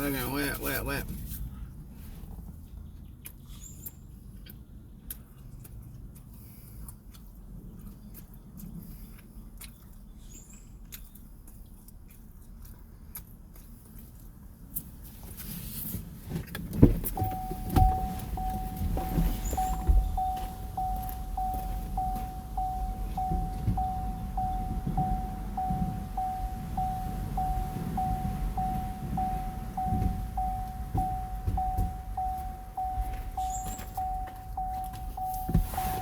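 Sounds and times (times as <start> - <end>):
car warning chime: 0.0 - 1.0, 16.9 - 36.0
low rumble: 17.1 - 36.0.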